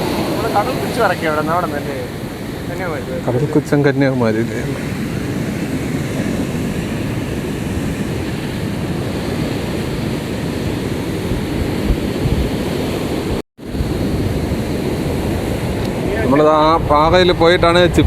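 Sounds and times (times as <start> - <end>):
surf breaking on a beach: 0.0 - 18.0
wind buffeting microphone: 0.0 - 18.0.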